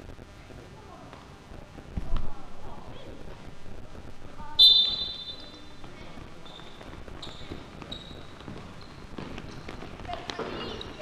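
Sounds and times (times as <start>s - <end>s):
fainter short whistle tones: 4.6s - 5.8s
referee's whistle blown sharply: 4.6s - 5.8s.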